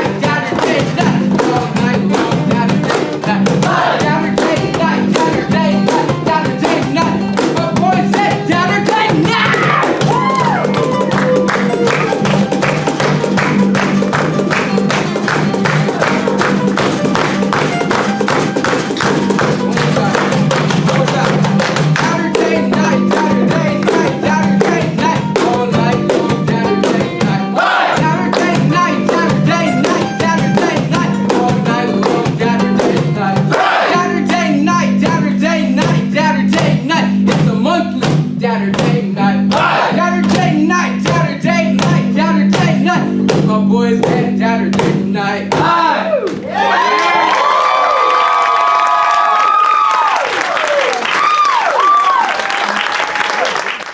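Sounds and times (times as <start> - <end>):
live band playing guitar-led song: 0.0 - 45.3
steady drumbeat: 0.0 - 45.8.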